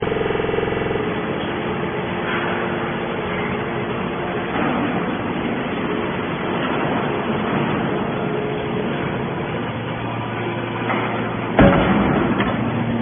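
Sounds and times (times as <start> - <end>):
mechanical running noise: 0.0 - 13.0.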